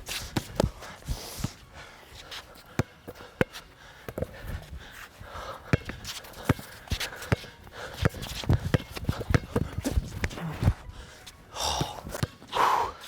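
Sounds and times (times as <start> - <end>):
basketball bouncing on hard court: 2.8 - 4.4, 5.7 - 10.4.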